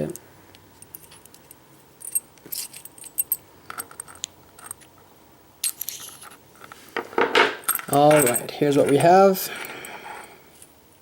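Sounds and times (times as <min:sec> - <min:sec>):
lock parts clicking and clinking: 0:00.8 - 0:05.0, 0:05.6 - 0:10.0.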